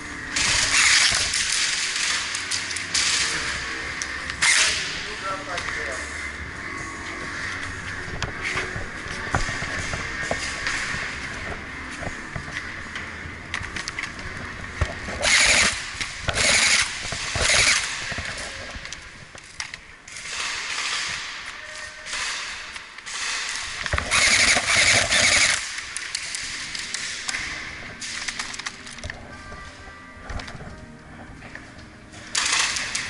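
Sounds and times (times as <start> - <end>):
airsoft guns firing bursts: 15.2 - 18.3, 22.1 - 27.2.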